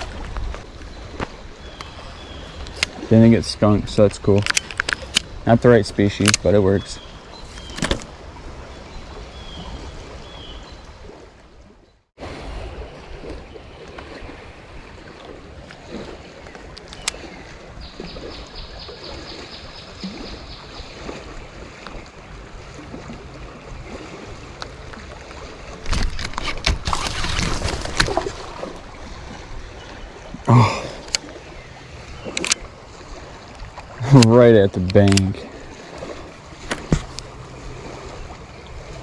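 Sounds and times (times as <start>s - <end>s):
river water running: 0.0s - 39.0s.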